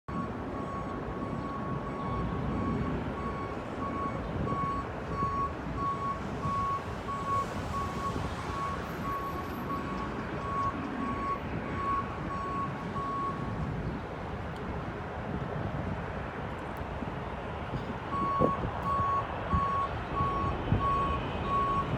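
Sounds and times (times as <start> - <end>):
reversing alarm beeps: 0.1 - 13.4, 18.1 - 21.9.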